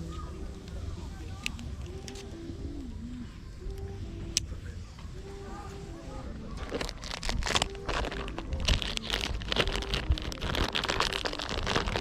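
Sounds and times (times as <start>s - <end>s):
firewood crackling and snapping: 6.6s - 12.0s.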